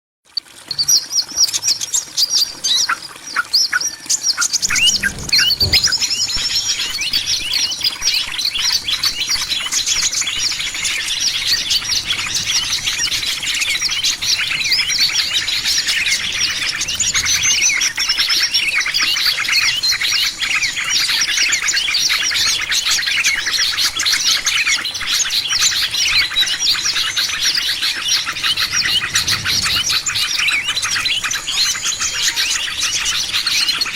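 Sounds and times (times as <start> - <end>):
small birds chirping: 0.7 - 33.9
low thump: 4.6 - 6.5.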